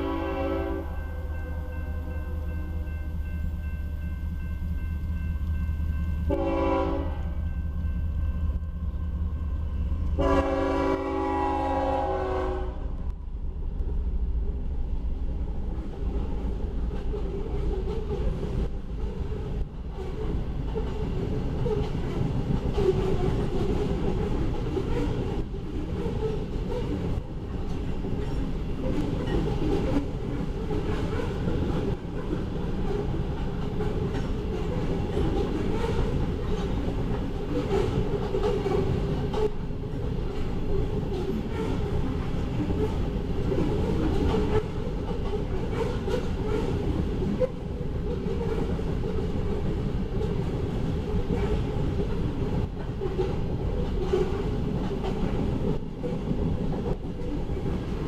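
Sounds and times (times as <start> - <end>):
locomotive horn: 0.0 - 2.9, 6.2 - 7.5, 10.1 - 13.0
train cars rumbling and clattering: 0.0 - 58.0.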